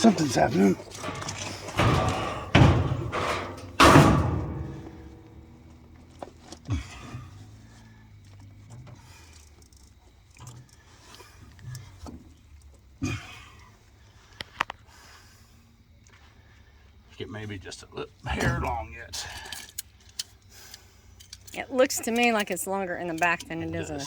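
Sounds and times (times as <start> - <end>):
loud ringing bangs: 0.0 - 6.2
light knocks of tools: 0.0 - 7.4.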